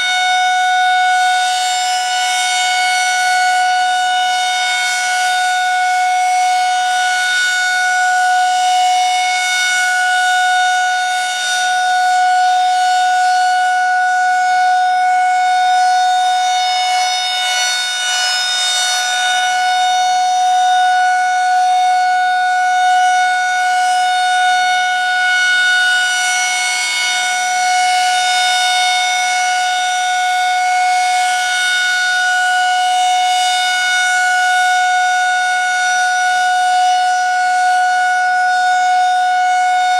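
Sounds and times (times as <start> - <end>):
warning siren steady tone: 0.0 - 39.9.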